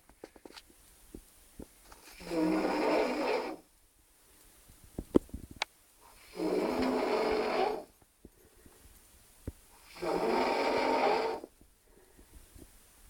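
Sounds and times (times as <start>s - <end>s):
man snoring: 2.2s - 3.6s, 6.2s - 7.9s, 9.8s - 11.5s.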